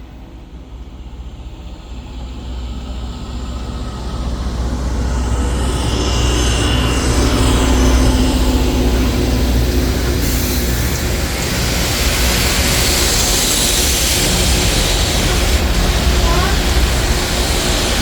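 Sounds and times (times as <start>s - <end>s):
rail grinder train rumbling: 0.0s - 18.0s
broad hissing noise: 9.9s - 18.0s.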